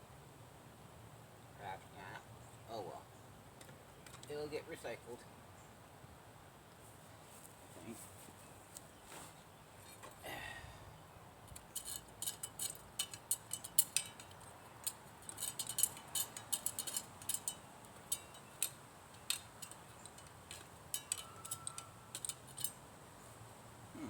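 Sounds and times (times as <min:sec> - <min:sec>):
metallic clicks and clinks: 0:11.4 - 0:22.9.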